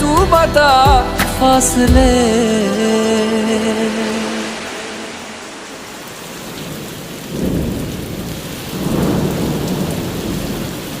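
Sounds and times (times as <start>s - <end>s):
low rumble: 2.0s - 8.0s
steady rain falling: 2.4s - 11.0s.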